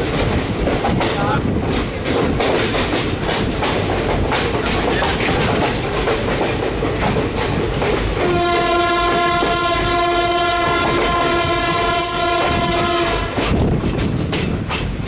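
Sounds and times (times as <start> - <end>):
train wheels clattering over rail joints: 0.0 - 15.0
locomotive horn long blast: 8.2 - 13.5.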